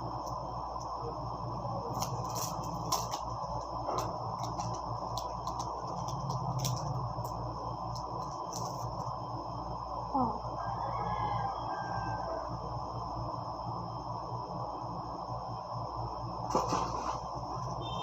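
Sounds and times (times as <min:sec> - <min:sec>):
low background hum: 0:00.0 - 0:18.0
packaging crinkling and clicking: 0:01.9 - 0:09.1.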